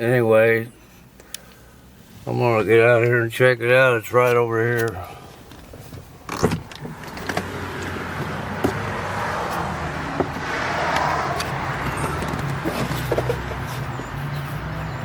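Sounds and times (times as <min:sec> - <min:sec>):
running vehicle hum: 0:00.0 - 0:15.0
car door clicks and knocks: 0:05.9 - 0:08.9
rush of noise: 0:09.0 - 0:11.9.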